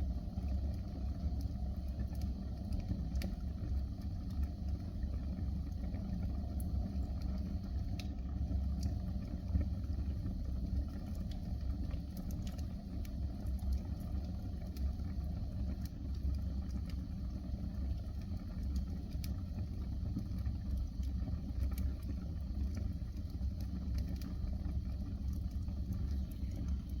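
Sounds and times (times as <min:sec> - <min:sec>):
fire crackling in fireplace: 0:00.0 - 0:27.0.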